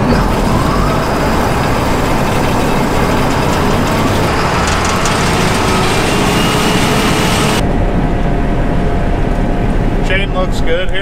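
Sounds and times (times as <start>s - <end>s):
combine harvester machinery din: 0.0s - 7.8s.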